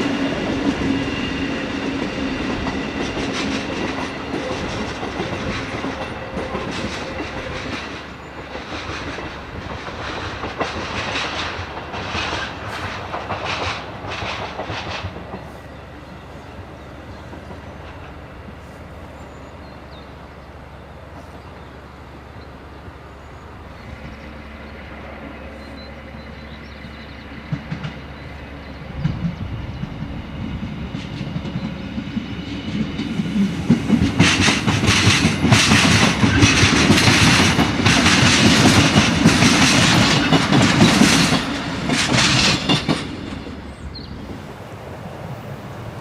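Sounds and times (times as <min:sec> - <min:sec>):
railcar engine drone: 0:00.0 - 0:46.0
train wheels clattering over points: 0:01.9 - 0:15.6, 0:32.7 - 0:43.6.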